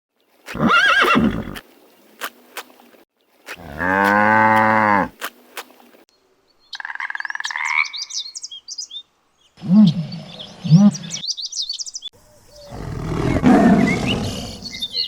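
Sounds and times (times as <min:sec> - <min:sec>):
horse whinnying: 0:00.5 - 0:01.6
cow mooing: 0:03.6 - 0:05.1.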